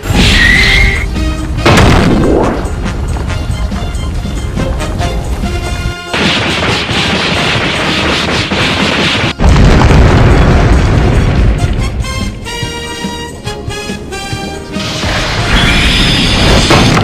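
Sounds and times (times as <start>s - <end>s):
background music: 0.0s - 8.2s, 11.1s - 17.0s
heavy low boom: 1.6s - 2.7s, 9.4s - 12.1s.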